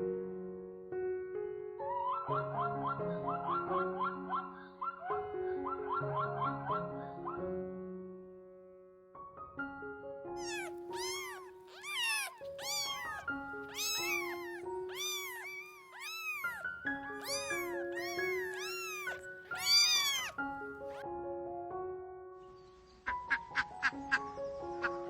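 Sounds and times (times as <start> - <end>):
high-pitched animal calls: 10.4 - 21.0
background music of held notes: 16.7 - 25.0.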